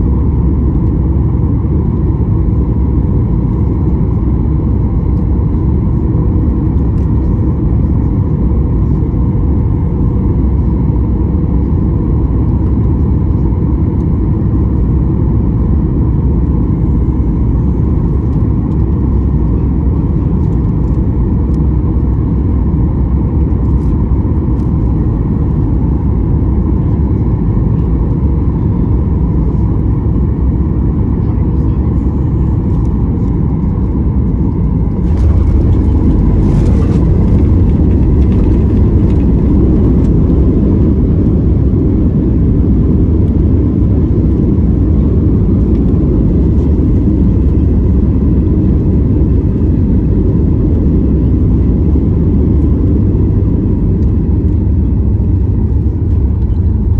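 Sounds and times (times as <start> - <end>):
airliner cabin engine rumble: 0.0 - 56.9
faint steady whine: 30.7 - 44.0.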